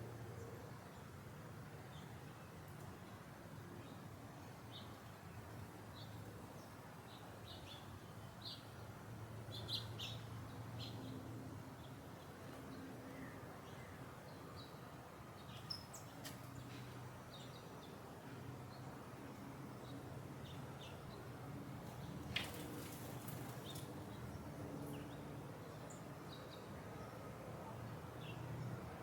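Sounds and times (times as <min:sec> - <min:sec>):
low garden ambience hum: 0:00.0 - 0:29.0
small birds chirping: 0:21.8 - 0:25.2.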